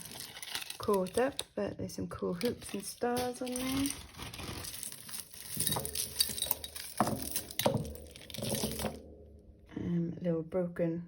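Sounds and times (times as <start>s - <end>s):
jewellery clinking together: 2.4s - 9.0s.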